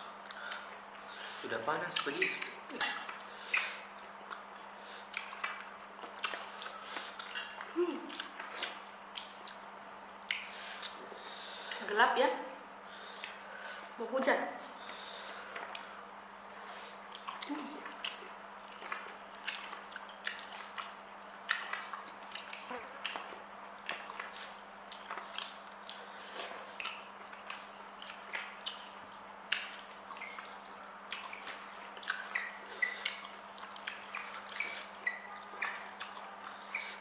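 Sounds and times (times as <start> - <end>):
wet chewing and lip smacks: 0.2 - 1.2, 1.9 - 11.0, 13.1 - 13.4, 14.8 - 16.0, 16.8 - 37.0.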